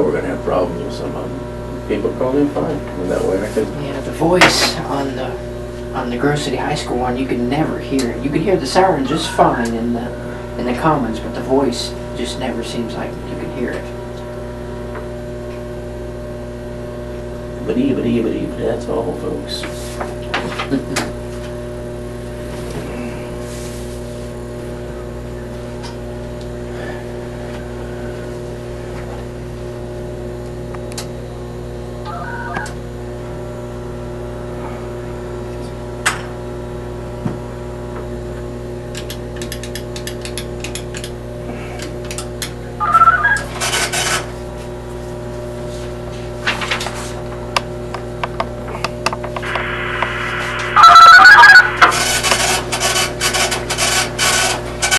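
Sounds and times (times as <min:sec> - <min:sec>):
electrical hum: 0:00.0 - 0:54.9
scattered clicks: 0:39.0 - 0:41.1
bursts of tone and noise: 0:42.8 - 0:43.5, 0:49.3 - 0:52.8.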